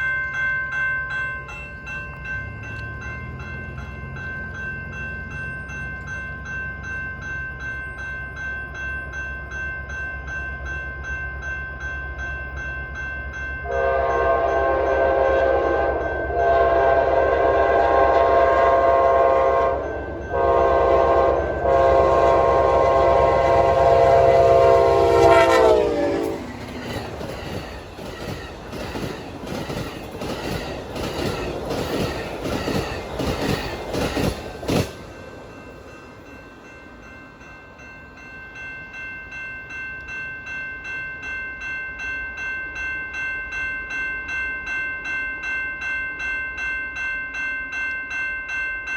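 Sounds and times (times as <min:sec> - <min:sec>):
train horn: 0:13.6 - 0:26.6
locomotive engine rumble: 0:13.8 - 0:36.3
train wheels click-clacking: 0:22.7 - 0:36.0.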